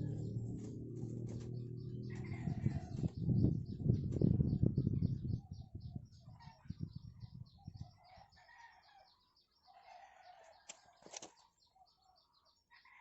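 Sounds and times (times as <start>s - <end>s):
small birds chirping: 0.0s - 13.0s
rooster crowing: 2.1s - 3.0s.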